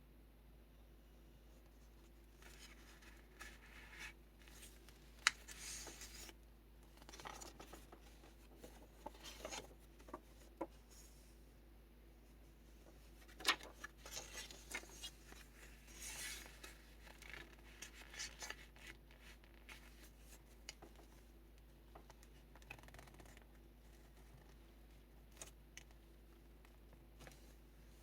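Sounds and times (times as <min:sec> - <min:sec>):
paper pages rustling: 0:02.4 - 0:11.1, 0:13.0 - 0:21.2.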